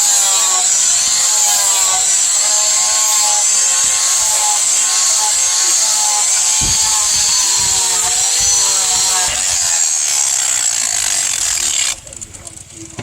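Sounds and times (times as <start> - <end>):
power grinder grinding steel: 0.0 - 13.0.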